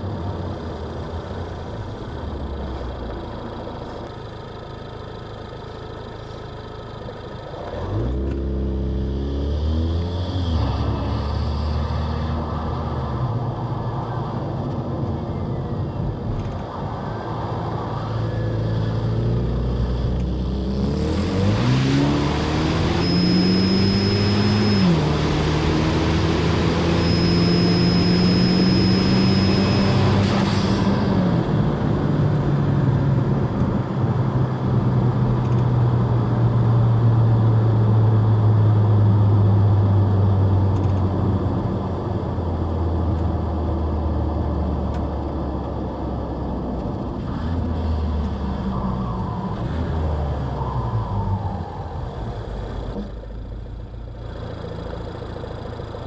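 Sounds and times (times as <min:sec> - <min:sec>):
car engine accelerating: 0:00.0 - 0:56.0
high turbo whistle: 0:21.2 - 0:31.4.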